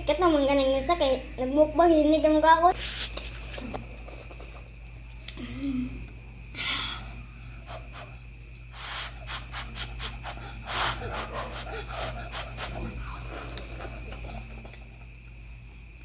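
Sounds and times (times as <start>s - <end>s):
steady low hum: 0.0s - 16.0s
wet chewing: 11.0s - 15.3s.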